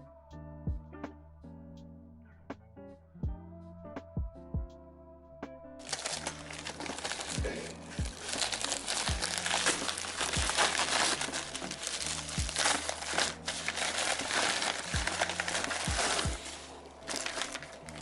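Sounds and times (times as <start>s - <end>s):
music with deep bass drum hits: 0.7s - 1.1s, 3.2s - 4.8s, 6.9s - 10.9s, 11.8s - 12.7s, 15.0s - 16.5s
crackling and rustling noise: 5.8s - 18.0s.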